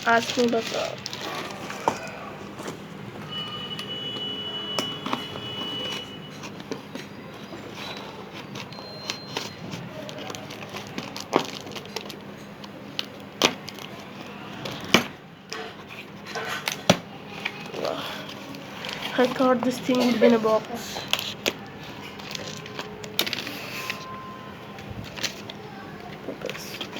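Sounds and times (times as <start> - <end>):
tools and packaging handled: 0.0 - 26.9.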